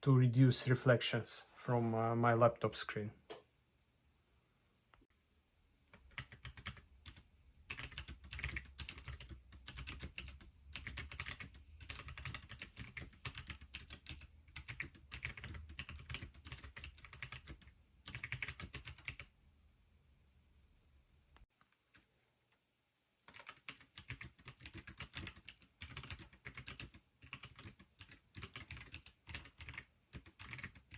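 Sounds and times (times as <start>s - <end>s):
mechanical keyboard typing: 5.9s - 19.3s, 23.3s - 30.9s.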